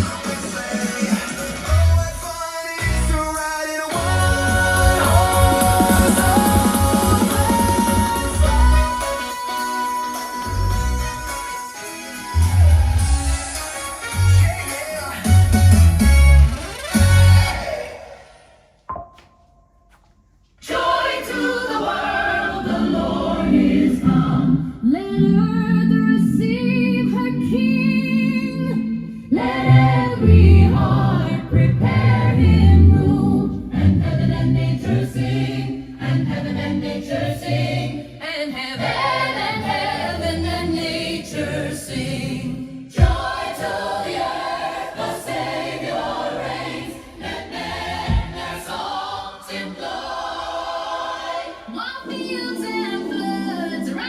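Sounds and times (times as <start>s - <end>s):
choir singing: 3.9s - 11.0s, 20.6s - 54.0s.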